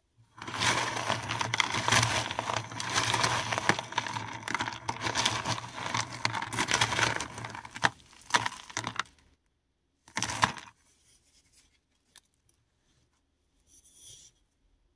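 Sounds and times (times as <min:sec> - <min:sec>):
mothballs being crushed by hand: 0:00.3 - 0:09.2, 0:10.1 - 0:10.7.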